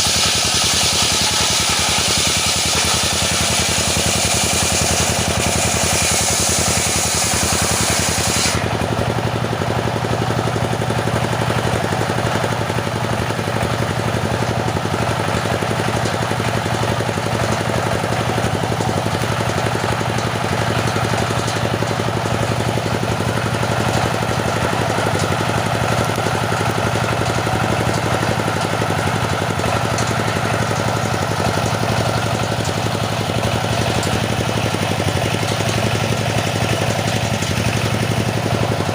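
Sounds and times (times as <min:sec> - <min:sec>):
saw blade cutting wood: 0:00.0 - 0:09.3, 0:17.2 - 0:38.9
saw engine running: 0:00.0 - 0:38.9.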